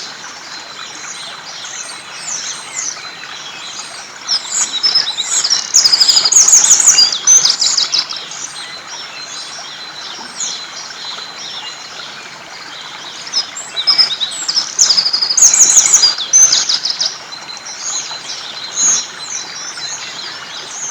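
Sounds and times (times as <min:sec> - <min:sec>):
songbird trilling: 0:04.4 - 0:08.5, 0:13.3 - 0:20.9.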